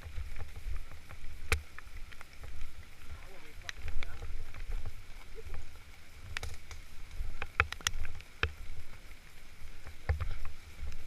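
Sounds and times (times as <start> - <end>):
sharp clicks and knocks: 6.3 - 8.6.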